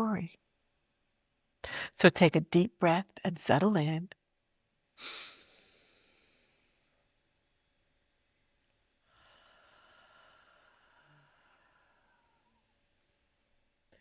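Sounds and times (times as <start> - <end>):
woman breathing in: 1.6 - 2.0, 9.0 - 12.7.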